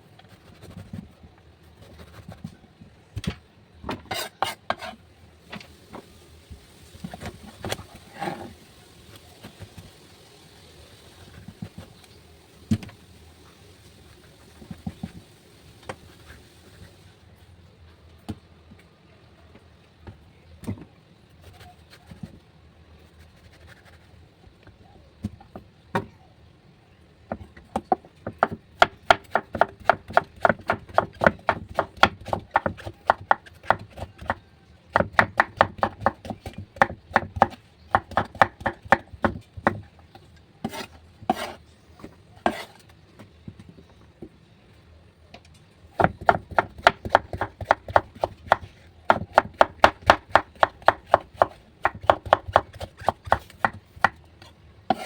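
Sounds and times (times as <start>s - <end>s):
knife chopping on cutting board: 3.2s - 5.0s, 27.8s - 34.4s, 35.0s - 39.8s, 40.6s - 41.6s, 42.4s - 42.8s, 46.0s - 54.2s.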